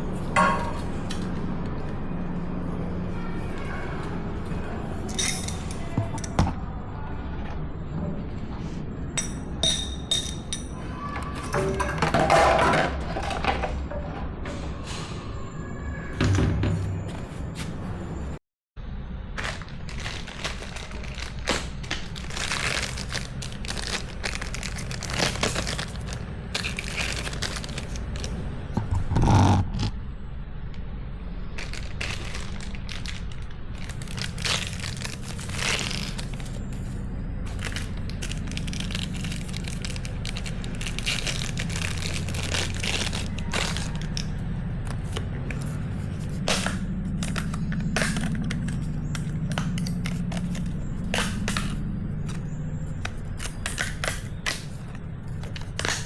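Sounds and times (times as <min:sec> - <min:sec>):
steady low hum: 0:16.6 - 0:56.0
rustling crunch: 0:19.4 - 0:28.5, 0:31.6 - 0:56.0.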